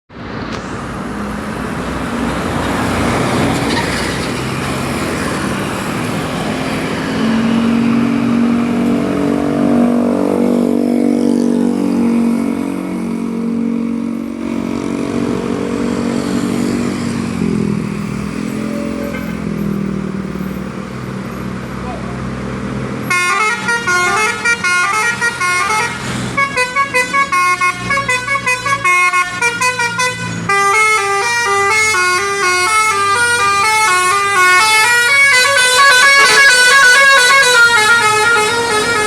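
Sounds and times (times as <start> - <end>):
vehicle engine and traffic: 0.1 - 39.0
multi-tone bus air horn: 23.1 - 39.0.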